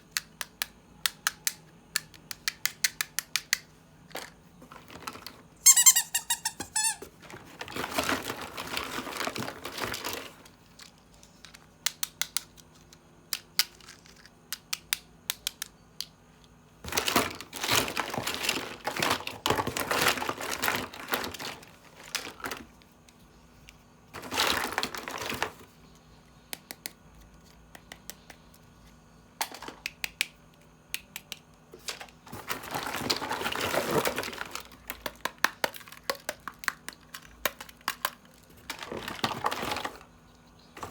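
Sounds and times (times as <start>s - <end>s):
plastic packaging crinkling: 4.9s - 11.0s, 16.9s - 22.6s, 24.2s - 25.7s
plastic toy parts clicking: 10.8s - 16.1s.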